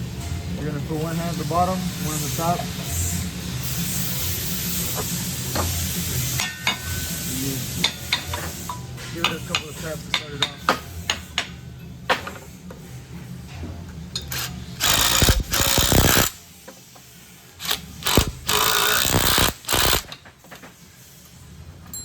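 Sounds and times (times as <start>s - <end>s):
harsh mechanical rattling: 14.3s - 16.4s, 17.6s - 20.2s.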